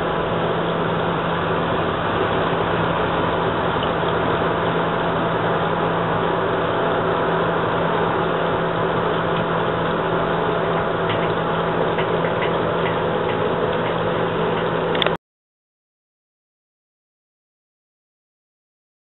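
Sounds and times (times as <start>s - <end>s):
ceiling fan running: 0.0s - 15.2s.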